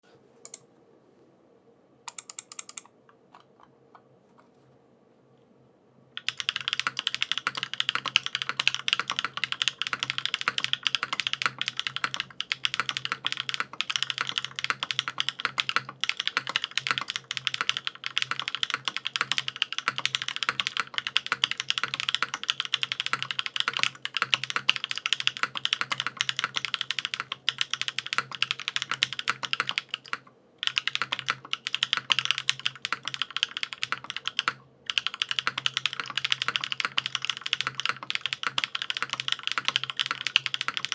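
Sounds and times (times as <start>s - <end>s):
fast typing on mechanical keyboard: 6.2s - 40.9s.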